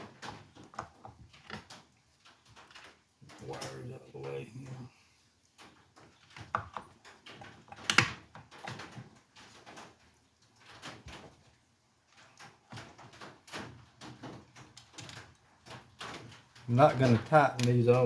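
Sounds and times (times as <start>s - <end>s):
tools and parts clicking: 14.2s - 17.8s.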